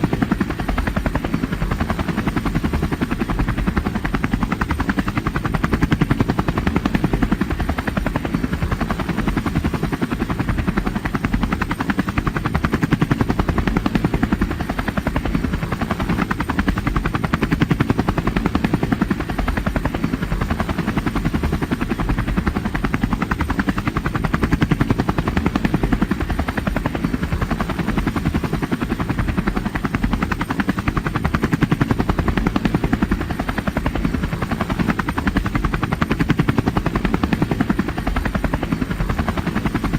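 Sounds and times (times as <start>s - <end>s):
helicopter rotor chopping: 0.0s - 39.9s.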